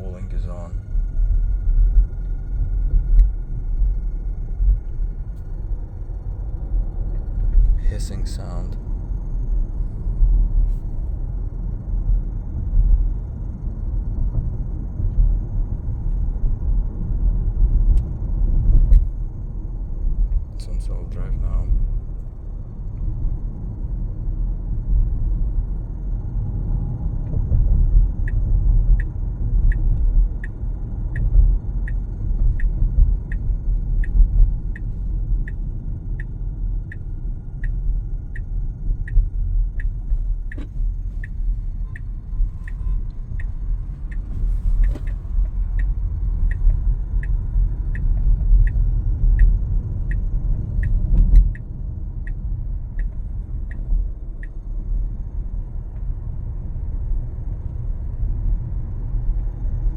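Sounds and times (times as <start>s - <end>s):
car cabin road rumble: 0.0s - 59.9s
light regular ticking: 29.7s - 56.1s.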